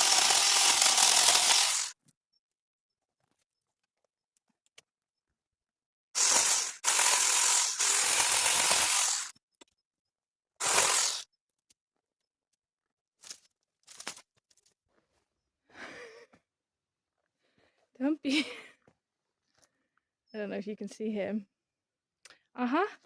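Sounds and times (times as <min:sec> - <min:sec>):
power tool cutting branches: 0:00.0 - 0:02.0, 0:06.2 - 0:09.4, 0:10.6 - 0:11.3.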